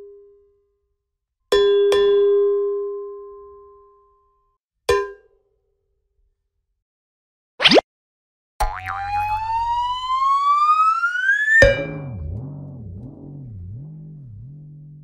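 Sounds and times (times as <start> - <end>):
low wobbling tone: 8.6 - 15.0
rising tone: 8.6 - 15.0.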